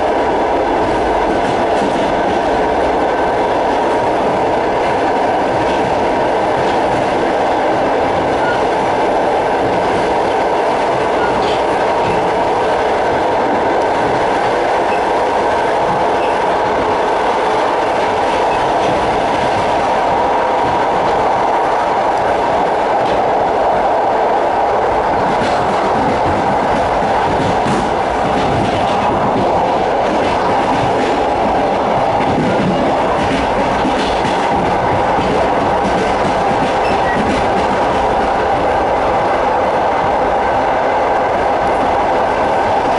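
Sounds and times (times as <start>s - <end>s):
train wheels on rails: 0.0s - 42.9s.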